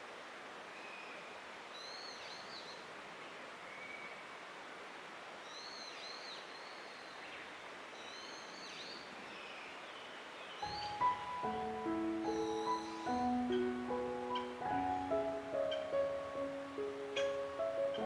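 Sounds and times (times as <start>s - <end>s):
outdoor hiss: 0.0s - 18.0s
small birds singing: 5.4s - 18.0s
music: 10.7s - 18.0s.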